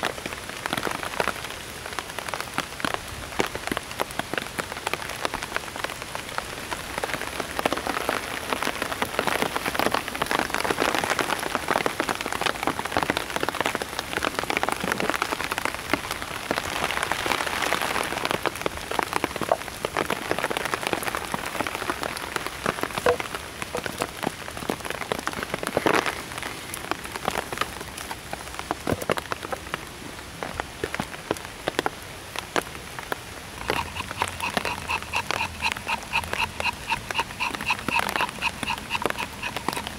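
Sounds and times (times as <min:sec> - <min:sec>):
rain on a shelter: 0:00.0 - 0:39.9.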